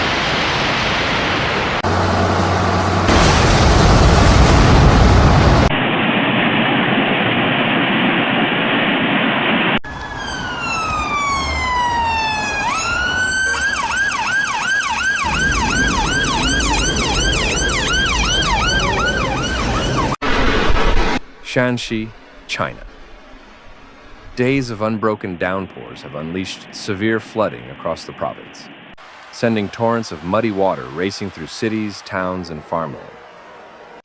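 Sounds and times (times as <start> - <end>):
floodwater rushing: 0.0 - 5.8, 29.0 - 34.0
heavy rain: 0.0 - 5.8, 15.2 - 19.4, 29.0 - 32.1
emergency vehicle siren: 9.8 - 20.4, 30.2 - 34.0.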